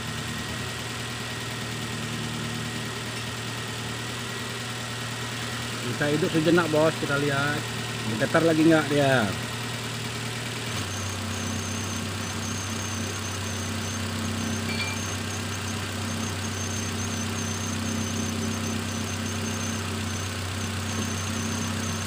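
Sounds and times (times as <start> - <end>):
car engine idling: 0.0 - 22.0
faint short beep: 10.9 - 19.9.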